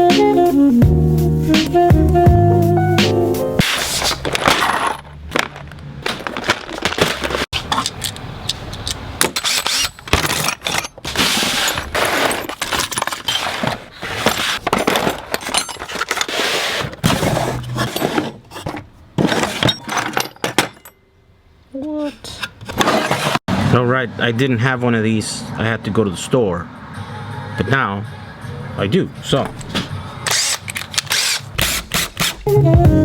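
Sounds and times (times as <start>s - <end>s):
tools clattering and scraping: 3.6s - 21.0s, 21.8s - 23.5s, 29.4s - 32.3s.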